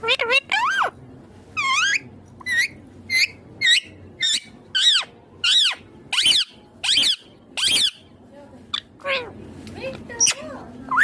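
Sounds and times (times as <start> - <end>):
parrot harsh shrill calls: 1.6 - 8.1, 10.2 - 11.0.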